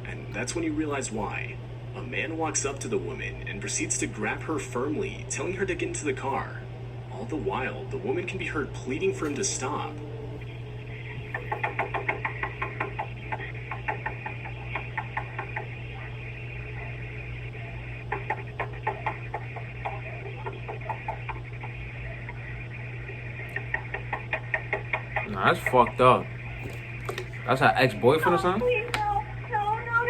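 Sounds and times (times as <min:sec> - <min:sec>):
low electrical hum: 0:00.0 - 0:30.0
rapid crackling clicks: 0:09.3 - 0:29.3.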